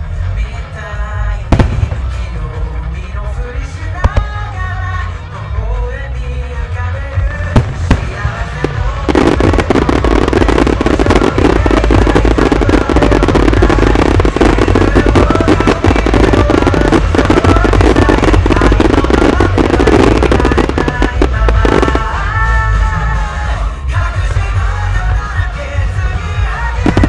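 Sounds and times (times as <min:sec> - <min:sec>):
music: 0:00.0 - 0:27.0
firework bangs: 0:01.5 - 0:02.5, 0:07.6 - 0:22.7, 0:26.7 - 0:27.0
fireworks crackling: 0:01.5 - 0:02.6, 0:04.0 - 0:04.6, 0:07.4 - 0:23.0, 0:24.2 - 0:27.0.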